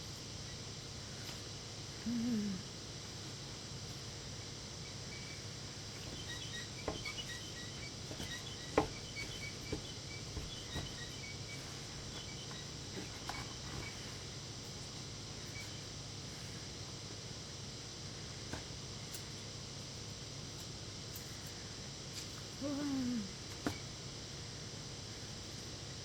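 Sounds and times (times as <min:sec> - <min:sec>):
faint high chirping: 0:04.4 - 0:14.2.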